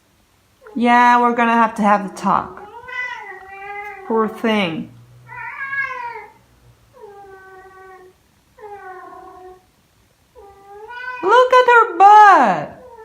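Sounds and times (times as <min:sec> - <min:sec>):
cat yowling: 0:02.5 - 0:04.1, 0:05.3 - 0:09.7, 0:10.4 - 0:11.3.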